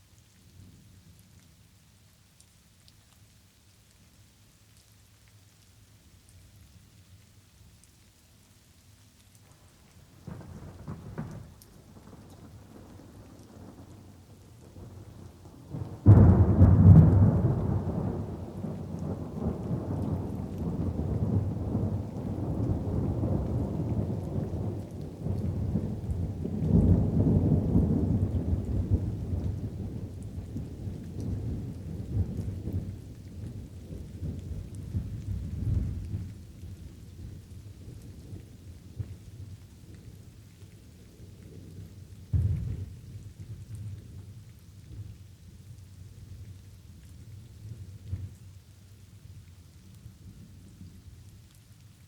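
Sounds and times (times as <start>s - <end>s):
light rain: 0.0s - 52.0s
thunder rumbling: 10.2s - 36.4s, 42.3s - 44.0s.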